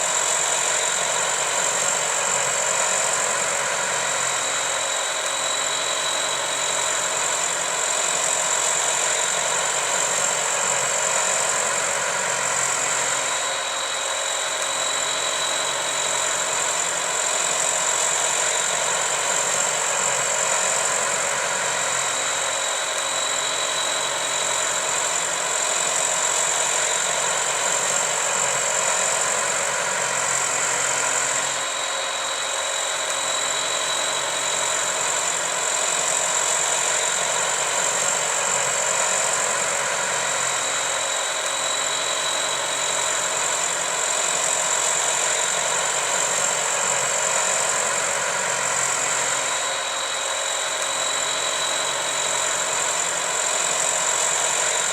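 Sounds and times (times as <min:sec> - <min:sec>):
motor whining: 0:00.0 - 0:54.9.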